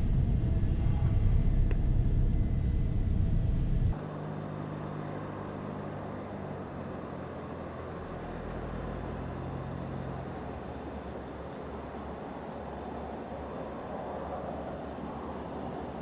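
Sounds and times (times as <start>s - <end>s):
airplane piston engine running: 0.0s - 4.0s.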